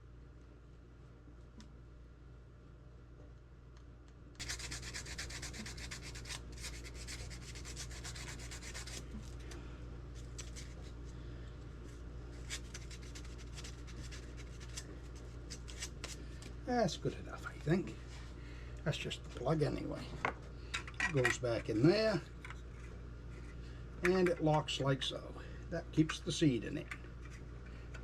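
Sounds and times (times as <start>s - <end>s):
hand scraping wax: 4.4s - 9.6s, 11.8s - 16.2s.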